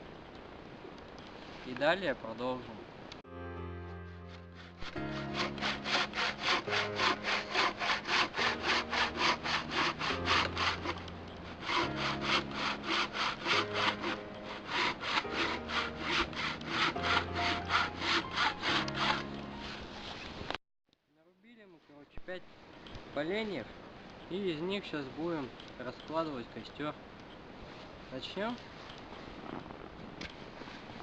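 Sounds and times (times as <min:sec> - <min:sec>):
low background music: 0:03.3 - 0:20.5
hand saw cutting through log: 0:04.6 - 0:19.8.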